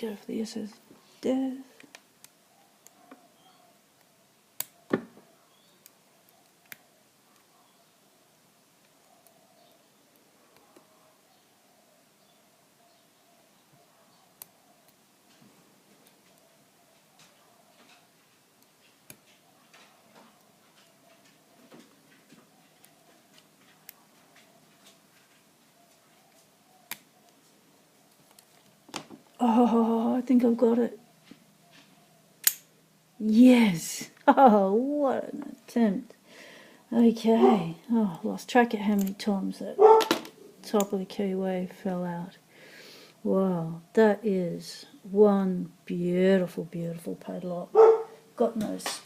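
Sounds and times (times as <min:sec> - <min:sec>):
lock-picking tools clicking in padlock: 0:32.4 - 0:32.7.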